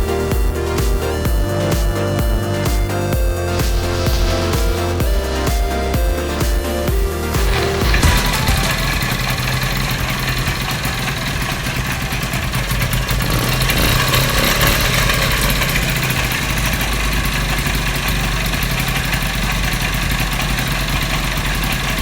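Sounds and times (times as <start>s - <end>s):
two-stroke engine idling: 7.5s - 22.0s.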